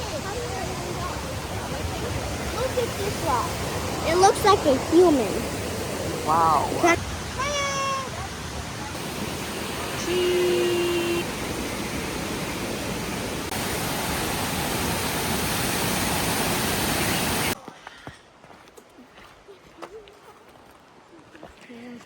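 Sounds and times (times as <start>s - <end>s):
rushing water: 0.0s - 17.6s.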